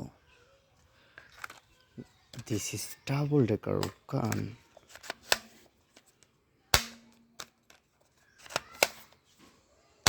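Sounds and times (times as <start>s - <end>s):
toy gun firing pops: 6.7s - 7.2s, 8.4s - 9.1s.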